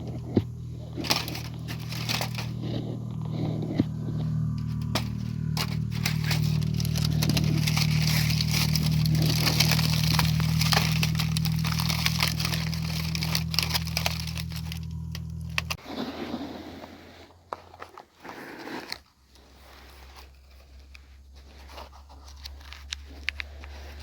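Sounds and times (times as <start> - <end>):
wood fire crackling: 0.0 - 15.8
steady low hum: 0.0 - 15.9.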